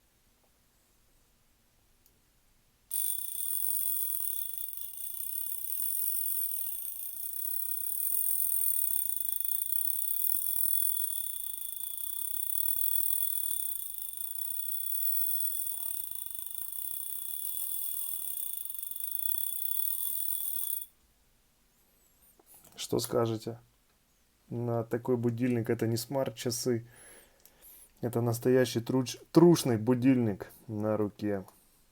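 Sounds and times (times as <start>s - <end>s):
watch alarm ringing: 2.9s - 20.9s.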